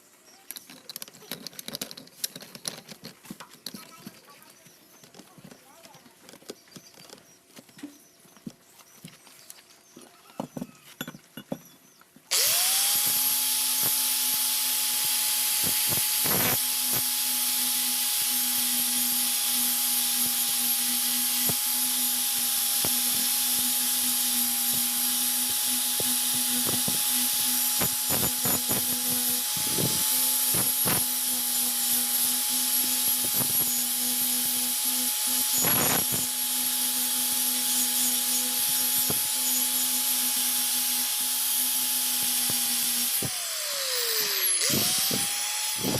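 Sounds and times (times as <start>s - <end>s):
electric power tool running: 12.3s - 45.9s.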